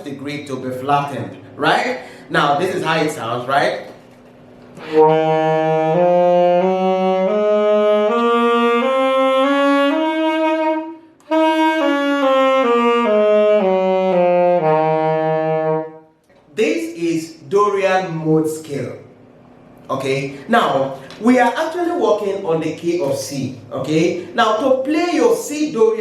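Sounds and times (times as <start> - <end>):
saxophone playing a scale: 3.5 - 16.2.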